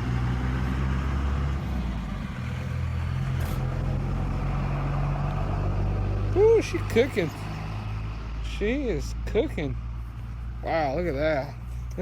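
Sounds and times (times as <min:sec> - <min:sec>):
diesel truck engine droning: 0:00.0 - 0:12.0.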